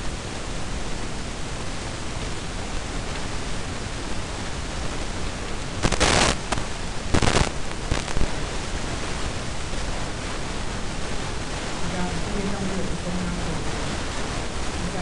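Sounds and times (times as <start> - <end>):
recording hiss: 0.0 - 15.0
short bursts of louder noise: 1.9 - 9.6.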